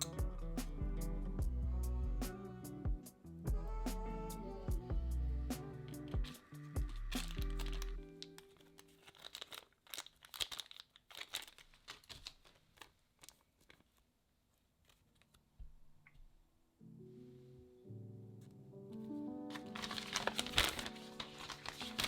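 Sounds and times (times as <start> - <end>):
background music: 0.0 - 8.9, 16.8 - 22.0
packaging crinkling and tearing: 6.8 - 14.1, 19.5 - 22.0.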